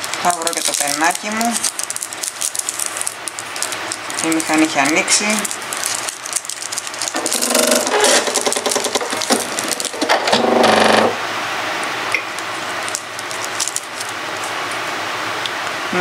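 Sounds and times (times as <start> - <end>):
sewing machine motor whirring: 7.1 - 11.1.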